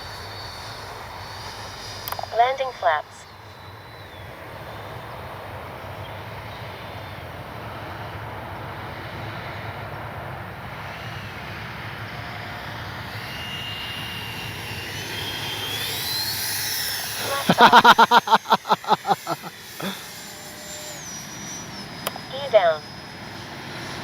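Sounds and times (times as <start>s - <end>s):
thin high whine: 0.0s - 7.0s, 12.1s - 24.0s
electric ducted fan whine: 11.5s - 22.8s.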